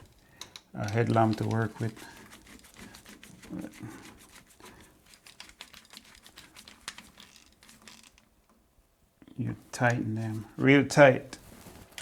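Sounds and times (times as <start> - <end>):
small clicks and rustles: 0.0 - 8.7, 11.3 - 12.0.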